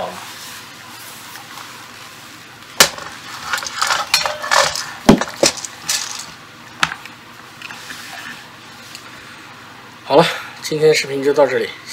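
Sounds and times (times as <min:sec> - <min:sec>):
scraping and rustling: 0:00.0 - 0:06.4
knocks of hard objects: 0:02.8 - 0:07.0.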